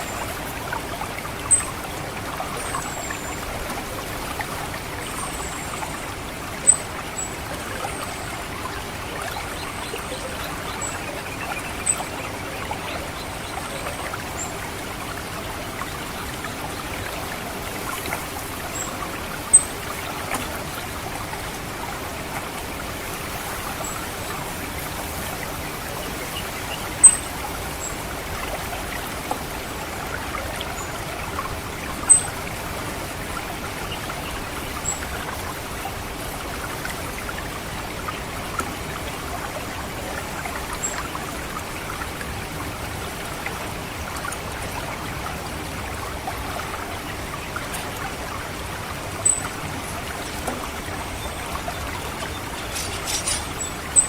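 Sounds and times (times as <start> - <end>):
trickling water: 0.0 - 54.0
high bird call notes: 51.3 - 54.0.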